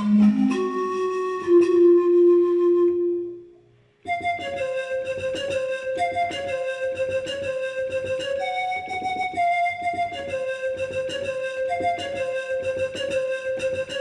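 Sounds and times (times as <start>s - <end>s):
synthesized pan-flute note: 0.0s - 3.5s.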